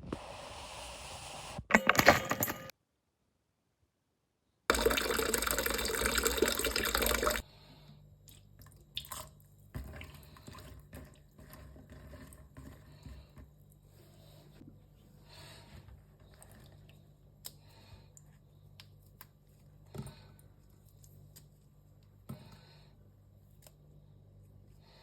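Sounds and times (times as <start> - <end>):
water running from tap: 4.7 - 7.4.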